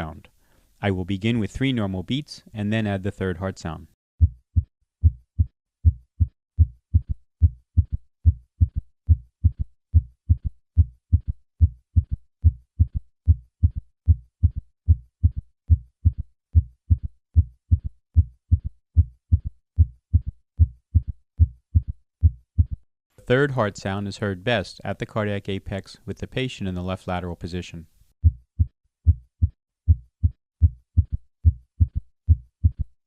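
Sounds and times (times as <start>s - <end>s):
heartbeat through stethoscope: 4.2s - 22.8s, 28.2s - 33.0s.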